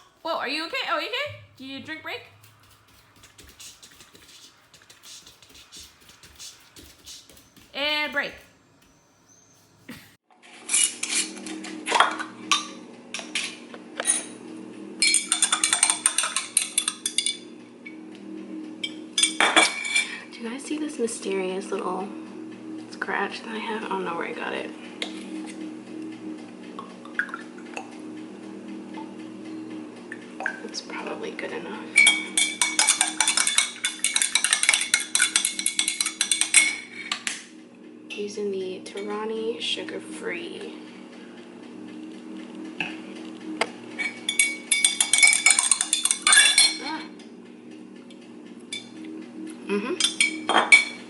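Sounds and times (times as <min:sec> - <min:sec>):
dishes and utensils clattering: 0:32.0 - 0:36.9, 0:44.0 - 0:46.8.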